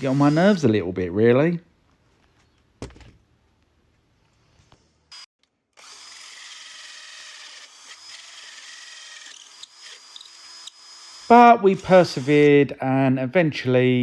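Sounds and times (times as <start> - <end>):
power drill cutting a hole: 0.0 - 0.6, 5.1 - 12.6.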